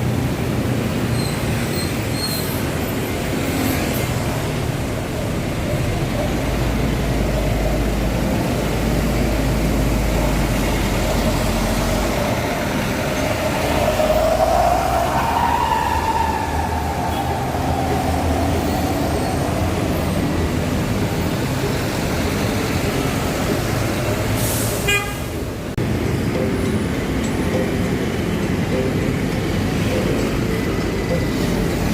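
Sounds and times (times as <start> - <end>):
bus passing: 0.0 - 31.9
traffic noise: 0.0 - 31.9
rising and falling whine: 10.8 - 20.9.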